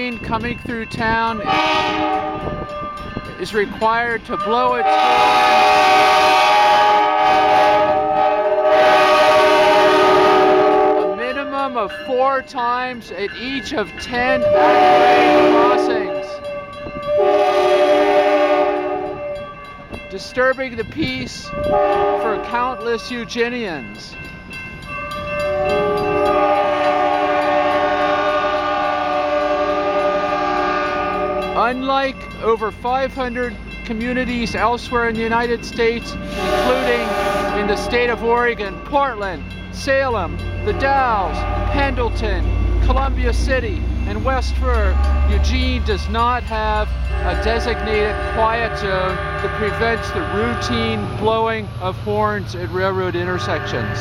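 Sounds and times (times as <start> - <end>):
train rumble: 0.0 - 54.0
locomotive air horn blast: 1.4 - 2.5, 4.8 - 11.2, 14.4 - 16.4, 17.1 - 19.3, 21.7 - 22.4, 26.2 - 31.6, 36.2 - 37.9, 47.1 - 51.2.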